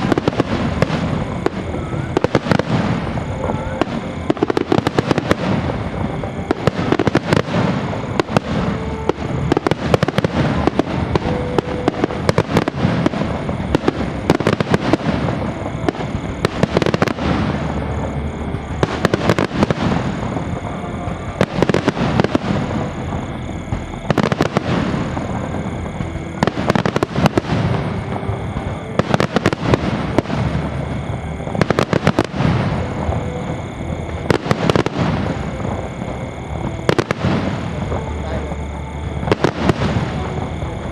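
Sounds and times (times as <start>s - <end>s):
faint music: 0.0s - 40.9s
fireworks bangs and crackling: 0.0s - 40.9s.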